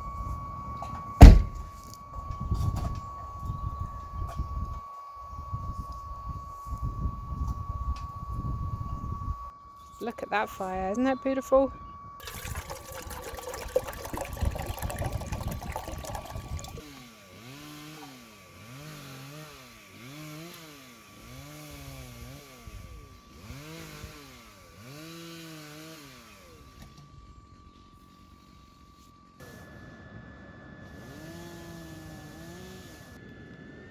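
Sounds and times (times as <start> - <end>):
chainsaw revving and cutting: 16.8 - 26.8, 31.0 - 33.2.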